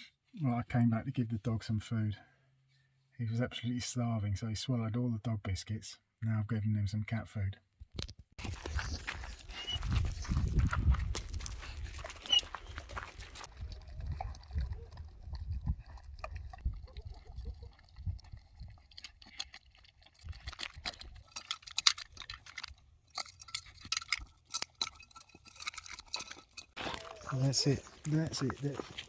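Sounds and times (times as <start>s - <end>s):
wind rumbling on microphone: 8.4s - 19.0s
dog chewing and licking: 8.5s - 27.3s.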